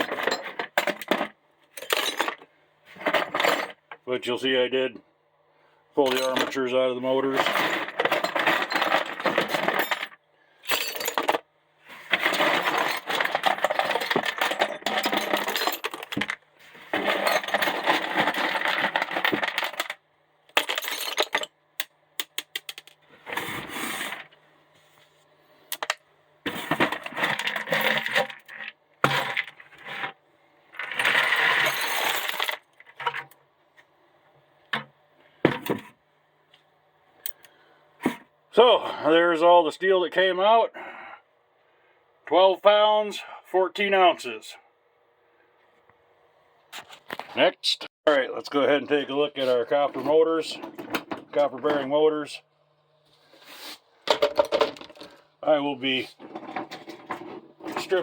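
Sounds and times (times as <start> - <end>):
scrap steel parts clattering: 0.0 - 4.0, 6.0 - 6.6, 7.2 - 21.6, 25.8 - 30.2, 30.8 - 33.3, 54.1 - 58.0.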